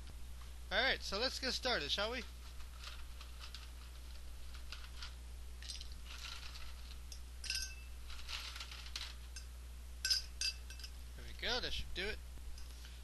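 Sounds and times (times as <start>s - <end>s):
glass clink ringing: 7.1s - 8.0s, 9.4s - 11.0s.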